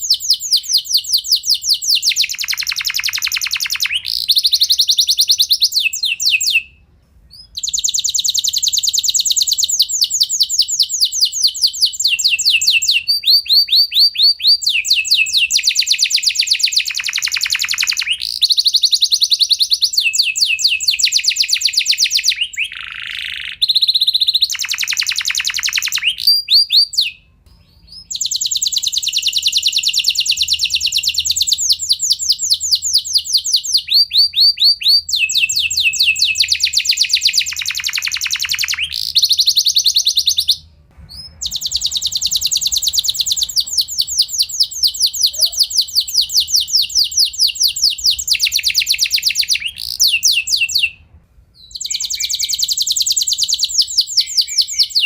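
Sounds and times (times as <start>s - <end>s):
canary singing trills: 0.0s - 51.0s, 51.6s - 55.0s.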